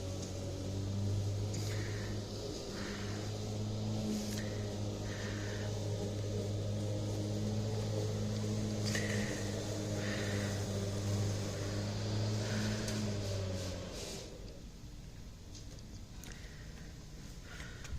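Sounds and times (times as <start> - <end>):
lawn mower engine running: 0.0 - 15.6.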